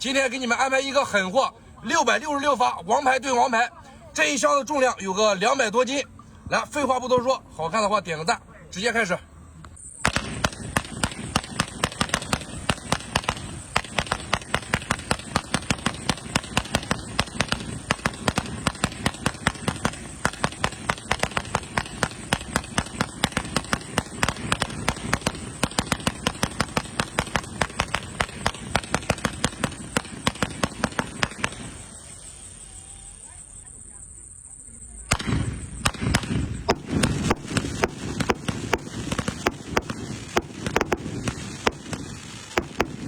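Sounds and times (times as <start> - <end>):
fireworks crackle: 9.7 - 43.0
fireworks firing shots: 9.8 - 34.0, 34.9 - 43.0.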